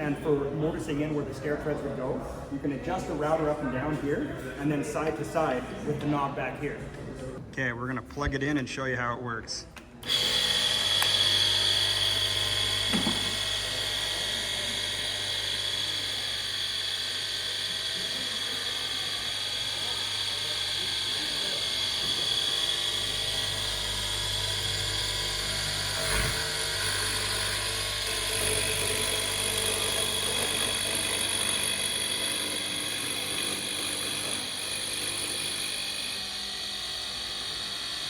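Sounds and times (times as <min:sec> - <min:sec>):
router motor whining: 0:10.0 - 0:38.0.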